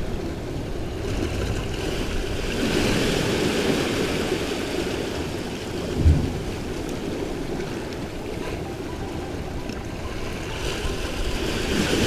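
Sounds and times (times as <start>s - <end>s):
wind rumble on microphone: 0.0s - 8.7s
ocean surf washing on shore: 0.0s - 12.0s.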